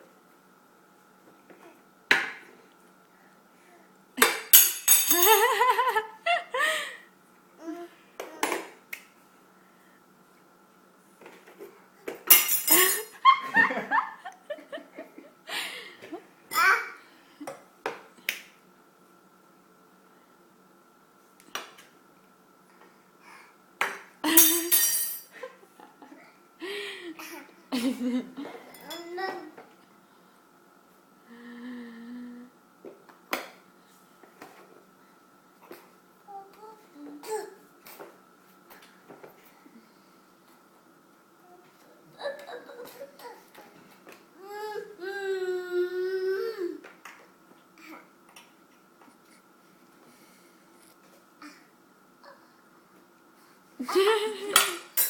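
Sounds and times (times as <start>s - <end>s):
metal cutlery clattering: 4.5s - 5.6s, 12.3s - 13.1s, 24.4s - 25.3s.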